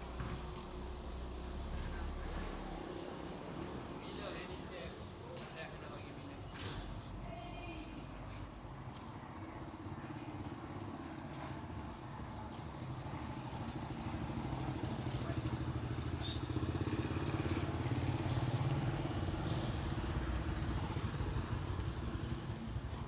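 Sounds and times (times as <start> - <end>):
motorcycle engine passing: 13.4 - 23.0.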